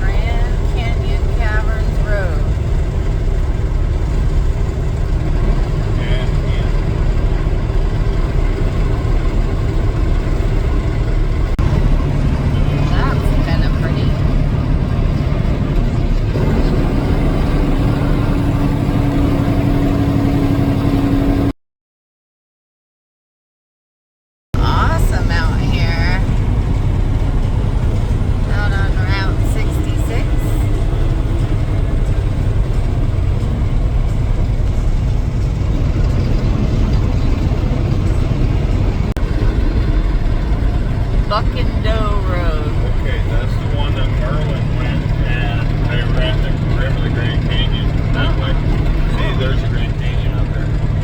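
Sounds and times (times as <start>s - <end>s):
vehicle road and engine noise: 0.0s - 21.6s, 24.6s - 51.0s.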